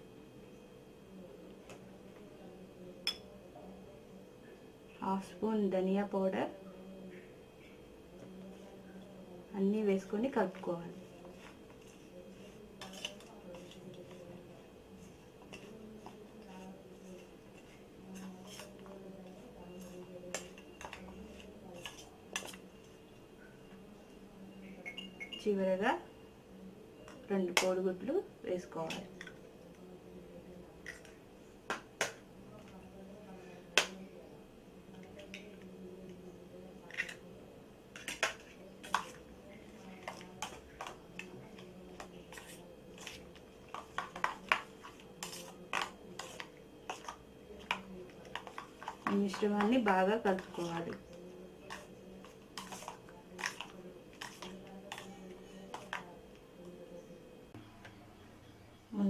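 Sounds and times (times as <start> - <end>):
spoon clinking and scraping bowl: 11.3 - 14.2, 24.7 - 25.5, 37.9 - 56.1.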